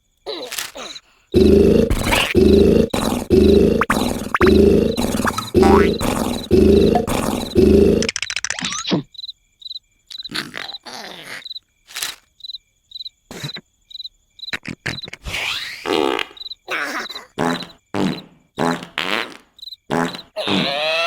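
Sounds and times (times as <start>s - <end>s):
cricket chirping: 0.0s - 21.0s
loud rhythmic snoring: 1.3s - 8.1s, 17.2s - 21.0s.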